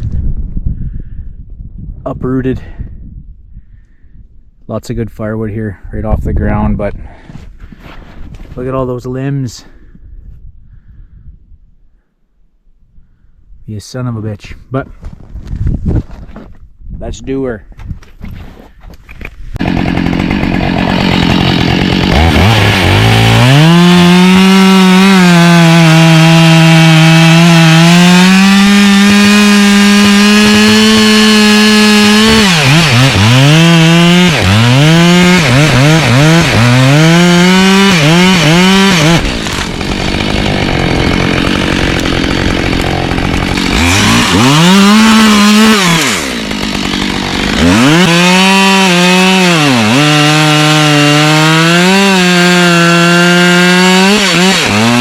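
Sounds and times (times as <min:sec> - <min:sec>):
chainsaw cutting wood: 0:19.0 - 0:55.0.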